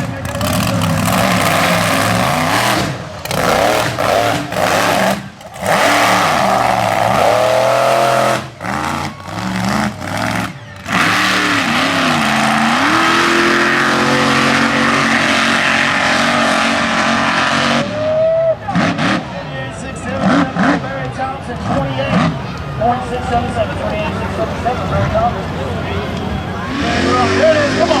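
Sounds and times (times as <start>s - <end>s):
truck engine revving hard: 0.0s - 20.9s, 21.5s - 28.0s.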